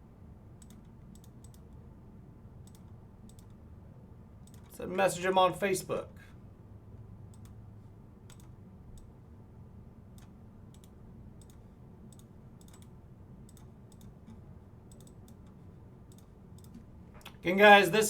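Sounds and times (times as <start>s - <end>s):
low steady room hum: 0.0s - 18.0s
computer mouse and keyboard clicking: 0.6s - 1.8s, 2.6s - 3.6s, 4.4s - 4.7s, 7.3s - 7.6s, 8.3s - 9.1s, 10.1s - 17.4s.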